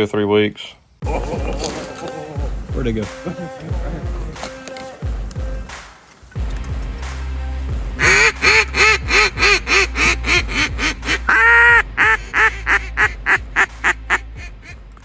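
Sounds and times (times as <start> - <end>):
steady low hum: 6.4 - 15.0
duck-like quacks: 8.0 - 14.8.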